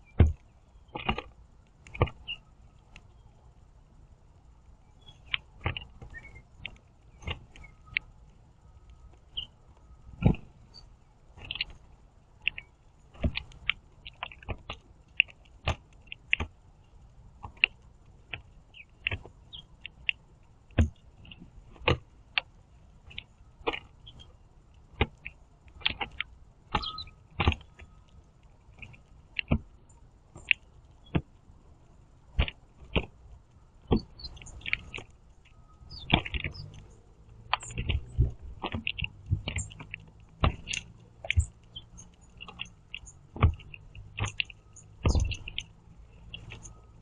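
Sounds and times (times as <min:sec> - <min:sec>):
quiet squeaky bird calls: 0:00.0 - 0:01.3, 0:01.9 - 0:03.6, 0:04.7 - 0:15.4, 0:17.6 - 0:20.3, 0:23.1 - 0:24.5, 0:25.2 - 0:31.2, 0:33.8 - 0:47.0
beaks tapping on wooden boards: 0:00.0 - 0:03.2, 0:05.0 - 0:31.4, 0:32.3 - 0:47.0.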